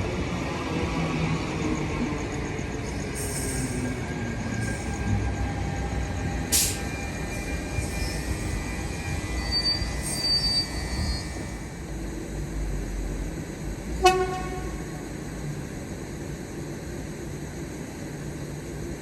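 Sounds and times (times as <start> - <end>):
train rumbling: 0.0 - 19.0
wheel squeal: 6.6 - 11.6
train horn toot: 14.0 - 15.0.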